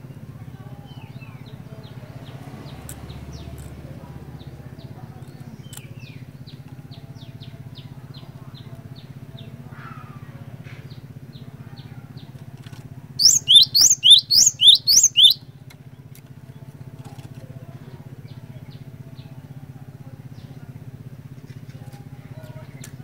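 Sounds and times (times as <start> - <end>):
bird singing high whistled notes: 13.2 - 15.4.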